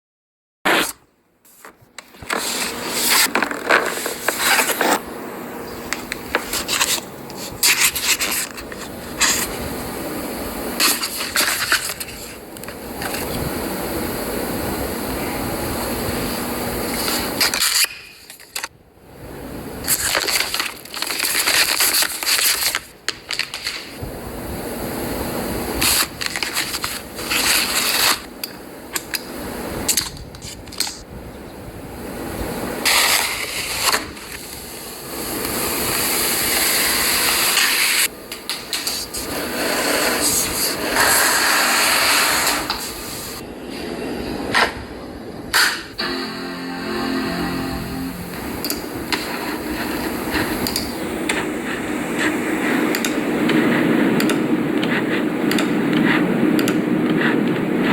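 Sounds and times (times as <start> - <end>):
cardboard and plastic packaging crackling: 19.8 - 24.0.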